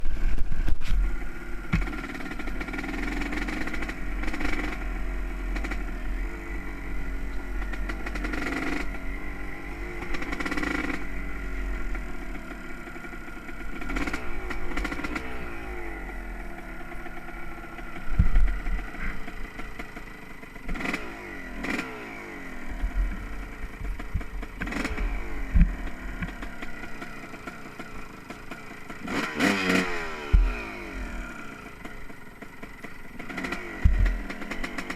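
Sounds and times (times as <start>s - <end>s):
two-stroke motorcycle engine revving: 0.0s - 34.9s.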